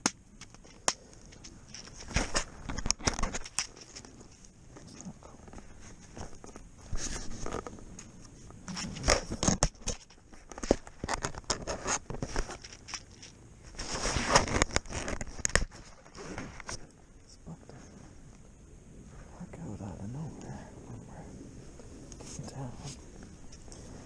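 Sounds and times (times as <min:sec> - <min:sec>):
rustling: 0:00.3 - 0:24.0
gear clicks and scrapes: 0:08.7 - 0:16.8.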